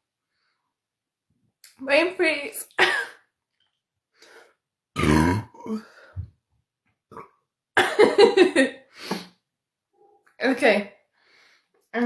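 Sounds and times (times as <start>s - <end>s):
woman burping: 5.0s - 5.9s, 7.1s - 8.4s
throat sounds: 5.0s - 6.3s.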